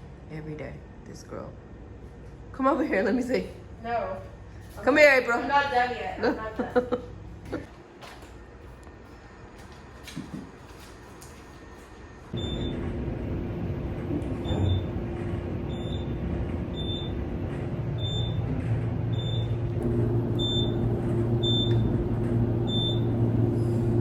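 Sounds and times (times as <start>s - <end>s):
vehicle engine hum: 12.4s - 24.0s.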